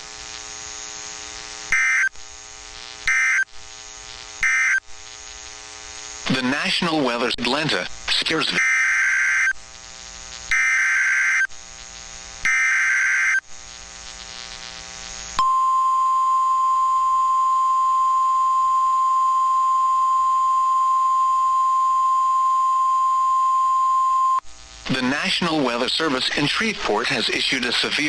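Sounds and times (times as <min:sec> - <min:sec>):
steady warning alarm tone: 0:01.7 - 0:02.1, 0:03.1 - 0:03.5, 0:04.4 - 0:04.8, 0:08.5 - 0:09.6, 0:10.5 - 0:11.5, 0:12.5 - 0:13.4, 0:15.4 - 0:24.4
two-tone data warble bursts: 0:04.4 - 0:04.8.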